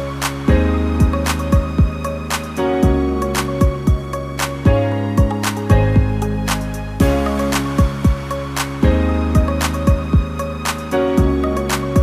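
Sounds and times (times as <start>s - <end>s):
drum beat with kick drum: 0.5s - 2.0s, 3.6s - 4.1s, 4.7s - 6.2s, 7.0s - 10.4s.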